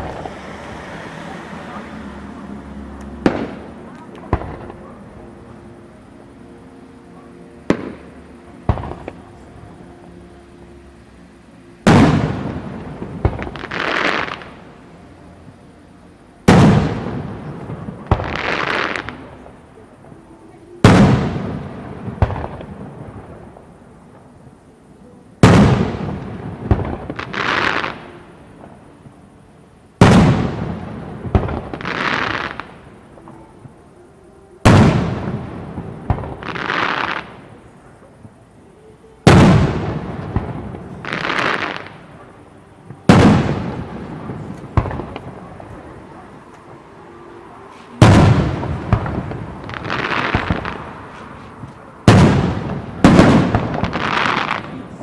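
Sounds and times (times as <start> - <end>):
fireworks booming and crackling: 0.0 - 5.9, 7.6 - 9.8, 11.8 - 14.9, 16.4 - 34.0, 34.6 - 38.6, 39.2 - 46.8, 47.8 - 55.0
light firework bangs: 3.1 - 5.0, 16.5 - 19.3, 20.8 - 22.7, 25.4 - 28.1, 30.0 - 32.8, 39.2 - 42.3, 43.0 - 45.8, 47.8 - 55.0.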